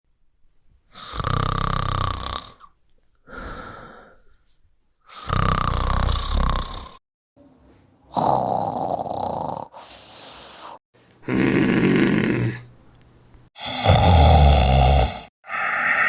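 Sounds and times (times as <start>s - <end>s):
man snoring: 1.0s - 2.6s, 5.1s - 7.0s, 8.2s - 10.1s, 11.2s - 12.7s, 13.6s - 16.0s
soft breath: 3.2s - 4.7s, 9.8s - 10.8s.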